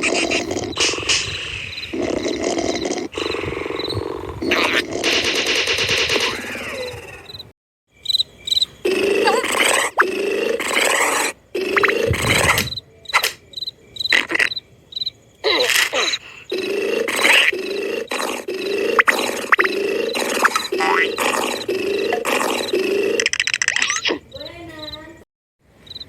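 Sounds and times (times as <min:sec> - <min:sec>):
cartoon snoring: 0:00.0 - 0:07.3, 0:08.8 - 0:12.8, 0:15.4 - 0:23.3.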